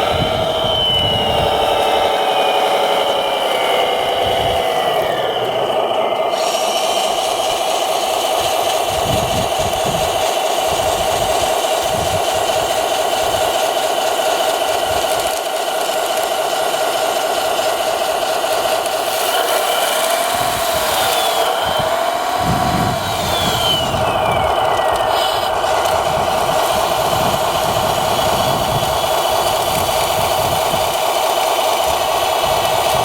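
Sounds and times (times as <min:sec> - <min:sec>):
low rumbles: 0:00.0 - 0:07.6, 0:20.3 - 0:30.9
small electric motors whining: 0:00.0 - 0:33.0.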